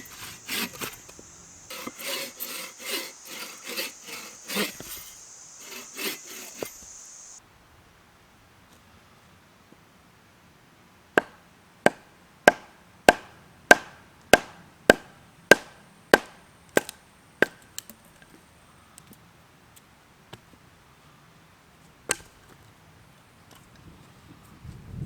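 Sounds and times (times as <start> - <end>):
tool chopping wood: 0.0 - 7.3, 11.2 - 17.6.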